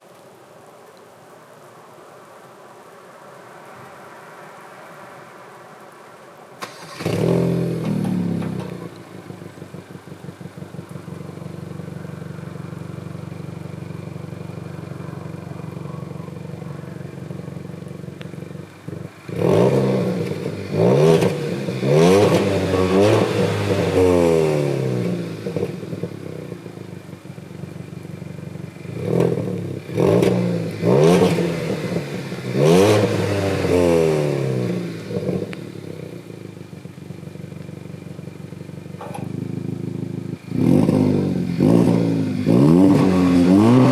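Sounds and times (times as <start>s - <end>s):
car engine idling and revving: 4.9s - 43.9s.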